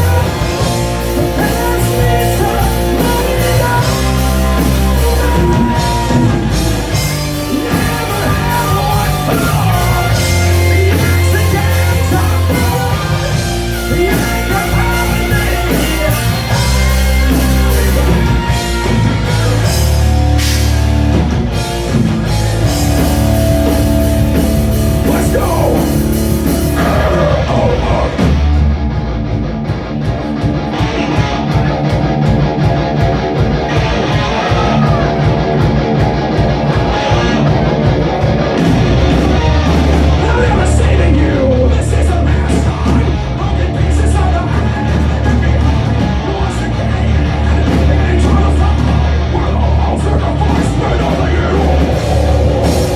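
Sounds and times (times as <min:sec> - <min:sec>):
bass guitar: 0:00.0 - 0:52.9
distorted electric guitar: 0:00.0 - 0:52.9
drum kit: 0:00.0 - 0:52.9
metal band playing: 0:00.0 - 0:52.9.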